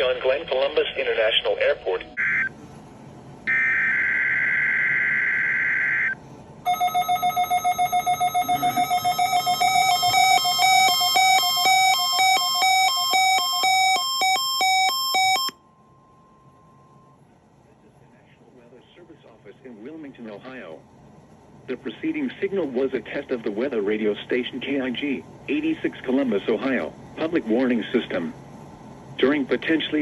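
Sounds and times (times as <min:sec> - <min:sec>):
electronic alarm pulsing rapidly: 0:03.5 - 0:15.6.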